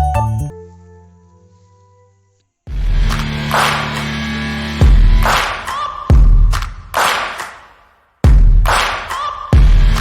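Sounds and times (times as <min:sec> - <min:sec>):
electronic music: 0:00.0 - 0:01.1
sharp clap or snare: 0:03.1 - 0:04.2, 0:05.2 - 0:10.0
heavy bass drum beat: 0:04.8 - 0:05.4, 0:09.6 - 0:10.0.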